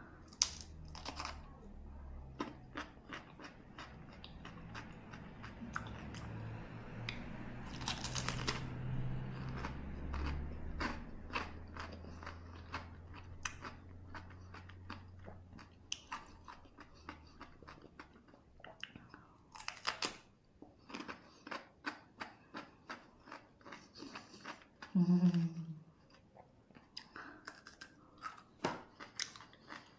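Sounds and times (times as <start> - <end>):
crunchy chewing: 2.3 - 6.4, 7.1 - 24.9, 26.1 - 29.9
person humming: 25.0 - 25.8.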